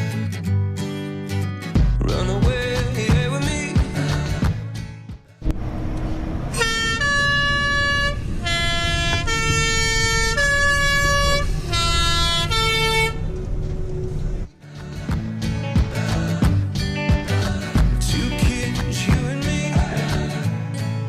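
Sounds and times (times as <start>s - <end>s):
low engine rumble: 5.4s - 14.6s
vehicle air horn playing tune: 6.5s - 13.3s.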